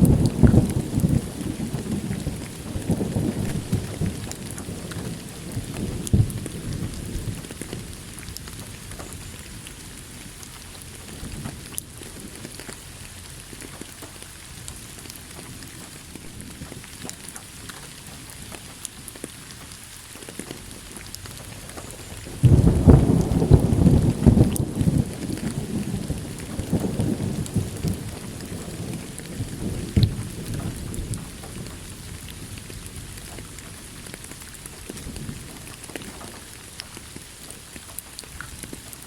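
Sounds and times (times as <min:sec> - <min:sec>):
rolling thunder: 0:00.0 - 0:12.7, 0:15.4 - 0:17.1, 0:20.7 - 0:36.6
rain drops ticking: 0:00.0 - 0:39.0
steady rain: 0:00.0 - 0:39.0.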